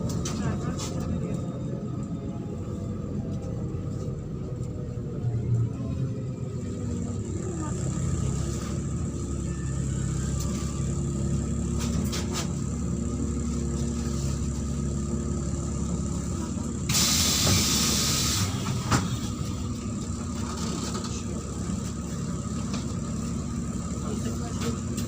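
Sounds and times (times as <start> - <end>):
bus engine droning: 0.0 - 25.0
compressed air hiss: 16.9 - 18.6.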